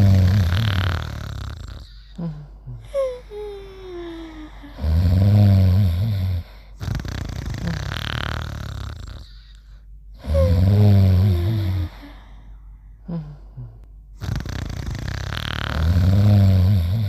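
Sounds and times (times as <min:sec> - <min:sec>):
cartoon character snoring: 0:00.0 - 0:02.0, 0:04.7 - 0:09.4, 0:10.2 - 0:12.0, 0:14.2 - 0:17.0.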